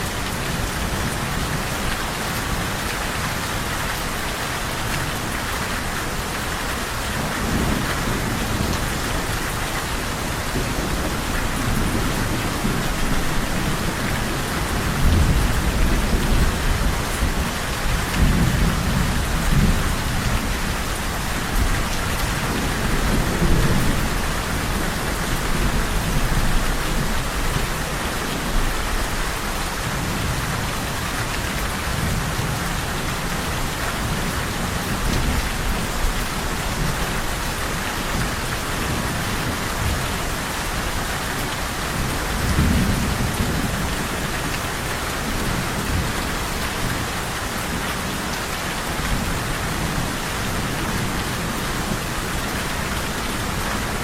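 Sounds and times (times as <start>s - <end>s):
steady rain falling: 0.0s - 54.0s
thunder rumbling: 5.4s - 30.9s.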